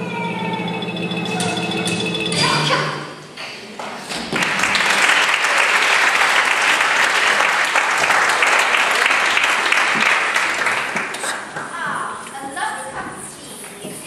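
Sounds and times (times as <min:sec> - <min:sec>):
audience applauding: 0:04.2 - 0:11.7.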